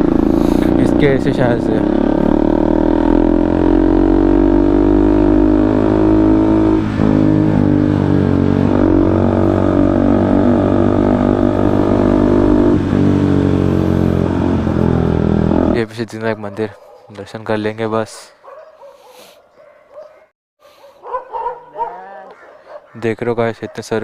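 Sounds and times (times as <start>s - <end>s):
motorcycle engine running: 0.0s - 15.8s.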